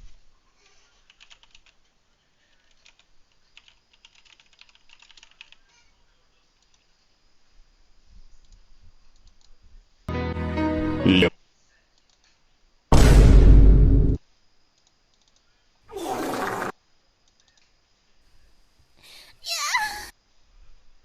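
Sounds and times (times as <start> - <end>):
typing on keyboard: 1.0 - 1.8, 2.5 - 5.6.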